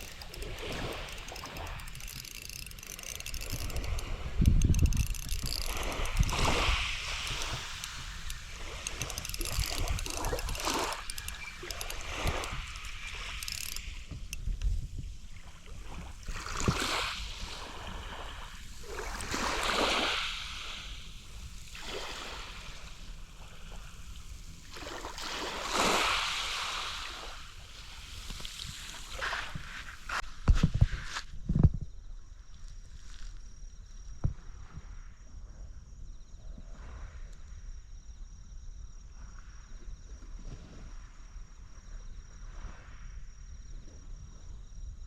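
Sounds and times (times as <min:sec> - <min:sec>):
waves washing up shore: 0:00.0 - 0:14.4, 0:15.2 - 0:30.2.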